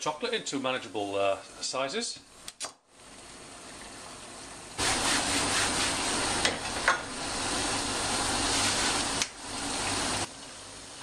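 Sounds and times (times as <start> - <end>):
short sharp snaps: 2.5 - 2.8
steady hissing: 4.8 - 10.3.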